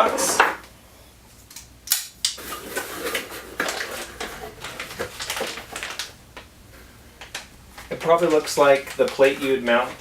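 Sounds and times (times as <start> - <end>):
cardboard rustling: 2.4 - 6.2, 7.2 - 10.0.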